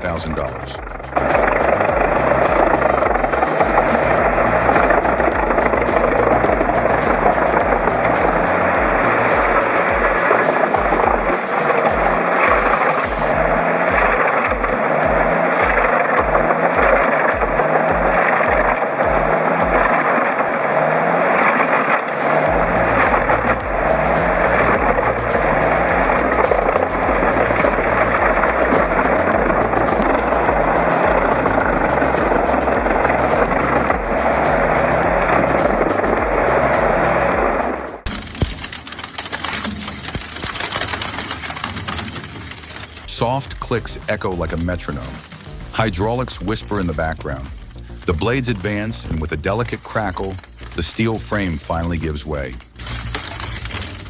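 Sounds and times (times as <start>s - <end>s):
background music with steady beat: 0.0s - 20.9s, 21.9s - 38.1s, 43.1s - 54.0s
wood chipper chipping logs: 0.0s - 54.0s.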